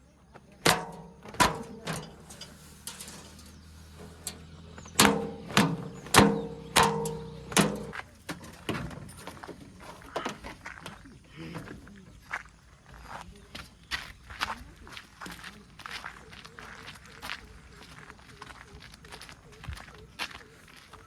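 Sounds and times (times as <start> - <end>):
metal clanks with ringing: 0.6 - 8.0
diesel engine humming: 0.7 - 8.7.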